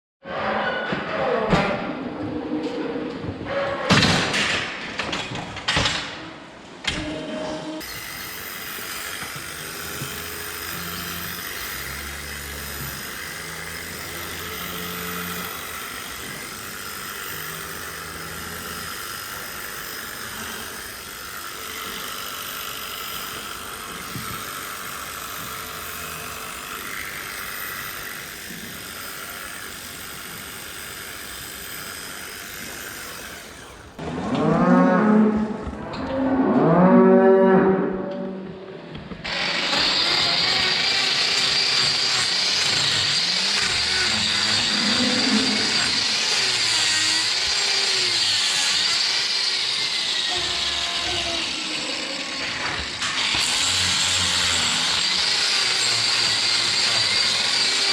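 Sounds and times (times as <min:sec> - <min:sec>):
cow mooing loudly: 0:44.4 - 0:46.1.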